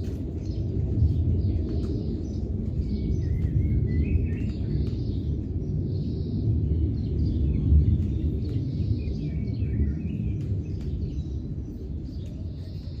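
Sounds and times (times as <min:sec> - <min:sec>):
birds chirping: 0:00.0 - 0:13.0
steady low rumble: 0:00.0 - 0:13.0.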